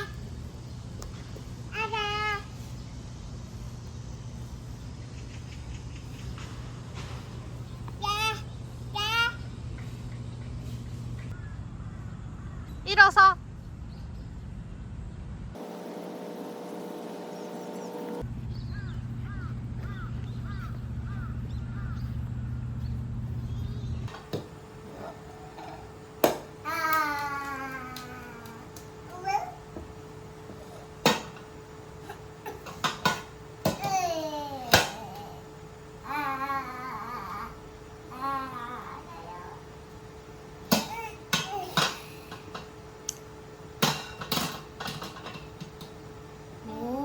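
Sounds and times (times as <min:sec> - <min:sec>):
small motor humming: 0:15.6 - 0:43.8.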